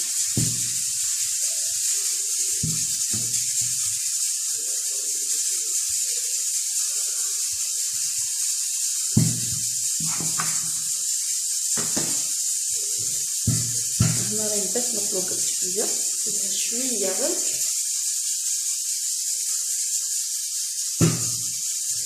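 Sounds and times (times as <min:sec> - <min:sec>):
steady high hiss: 0:00.0 - 0:22.0
hands thumping dough: 0:00.4 - 0:00.8, 0:09.2 - 0:10.6, 0:13.5 - 0:14.4, 0:21.0 - 0:21.5.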